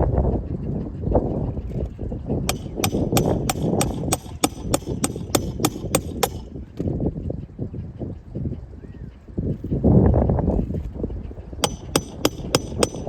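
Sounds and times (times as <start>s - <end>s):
hammer driving nail through shingle: 2.5s - 6.8s, 11.6s - 13.0s.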